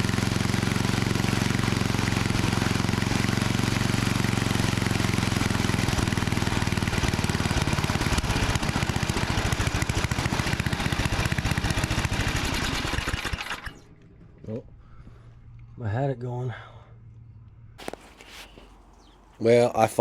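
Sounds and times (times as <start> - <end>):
snowblower engine running roughly: 0.0 - 13.8.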